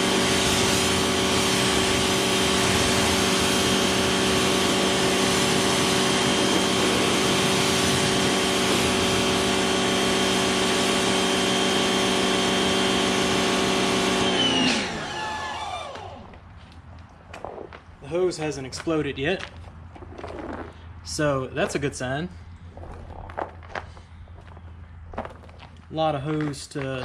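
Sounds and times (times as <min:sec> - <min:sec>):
pressure washer water spray hiss: 0:00.0 - 0:14.7
motor and pump whine: 0:00.0 - 0:16.5.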